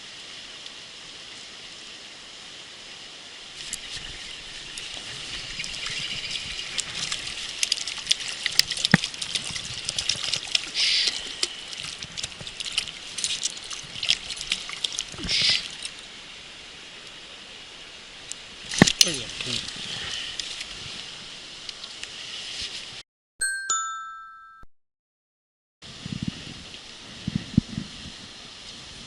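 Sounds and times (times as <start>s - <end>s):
water splashing: 3.5s - 16.8s, 18.2s - 22.2s.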